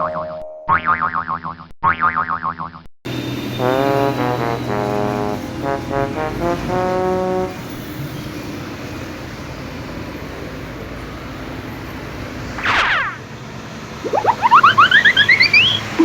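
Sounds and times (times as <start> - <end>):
rising cartoon chirps: 12.6 - 13.2, 14.0 - 16.0
cartoon falling boing: 14.1 - 16.0.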